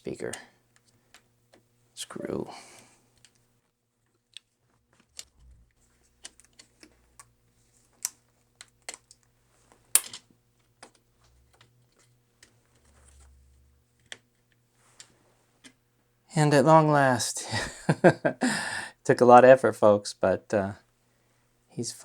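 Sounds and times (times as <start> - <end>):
small hand tools clicking on laptop: 4.1 - 15.8.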